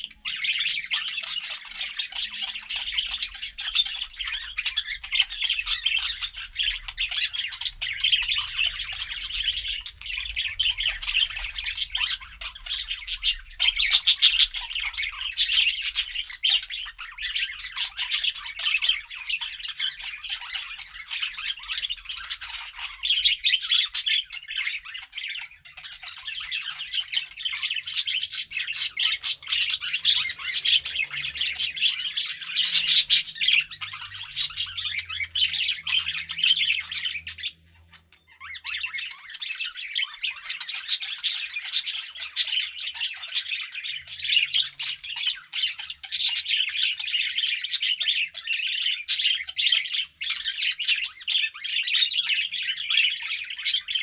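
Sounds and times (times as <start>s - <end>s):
budgerigars chirping and warbling: 0.0s - 54.0s
budgerigar squawks: 11.1s - 18.8s, 27.8s - 37.2s.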